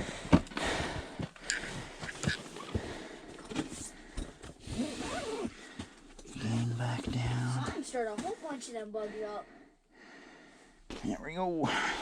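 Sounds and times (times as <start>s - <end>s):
fishing gear clicks and knocks: 0.2s - 4.6s.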